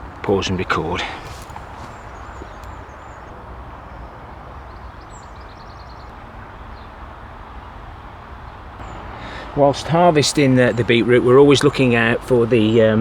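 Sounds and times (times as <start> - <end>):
small bird chirping: 0.0 - 9.5
faint high bird calls: 0.0 - 12.8.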